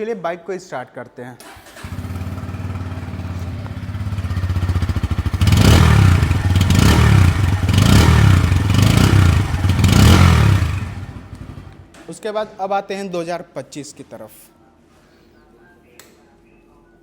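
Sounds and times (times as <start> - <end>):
motorcycle engine idling and revving: 1.6 - 11.9.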